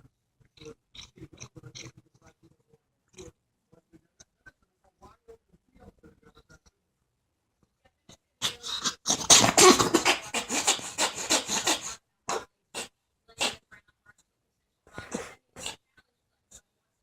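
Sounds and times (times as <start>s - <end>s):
animal hacking coughs: 8.4s - 13.6s, 15.0s - 15.8s.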